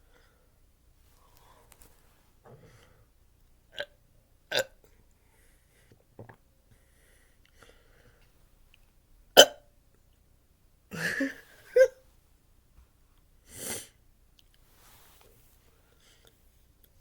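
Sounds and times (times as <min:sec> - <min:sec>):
person hiccupping: 0:09.4 - 0:09.6.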